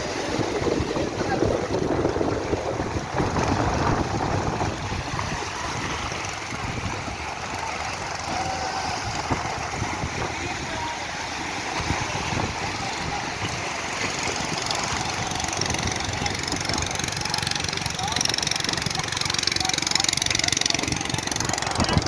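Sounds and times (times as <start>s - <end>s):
boat engine running: 0.0s - 22.0s
water rushing: 0.0s - 22.0s
wind noise: 0.0s - 22.0s.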